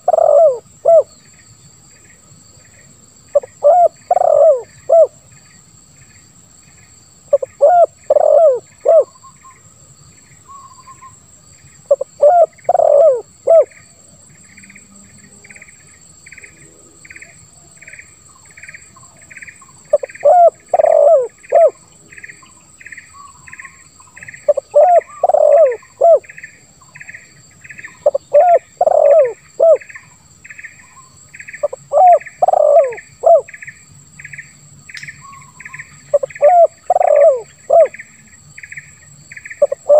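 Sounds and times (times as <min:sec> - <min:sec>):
dove cooing: 0:00.0 - 0:01.1, 0:03.4 - 0:05.2, 0:07.3 - 0:09.1, 0:11.9 - 0:13.8, 0:19.9 - 0:21.8, 0:24.4 - 0:26.4, 0:27.9 - 0:29.9, 0:31.6 - 0:33.5, 0:36.1 - 0:38.0, 0:39.6 - 0:39.9
constant high buzz: 0:00.0 - 0:39.9
insects chirping: 0:00.0 - 0:39.9.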